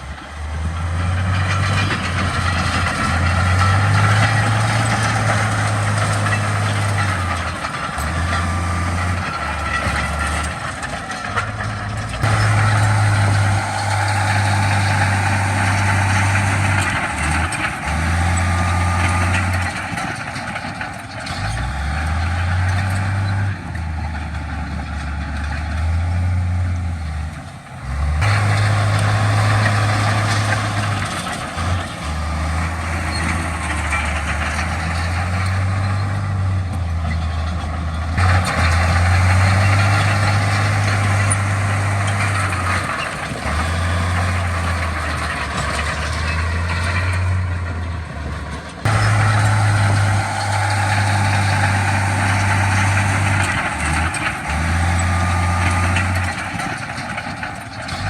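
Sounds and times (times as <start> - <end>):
diesel machinery engine drone: 0.0 - 58.0.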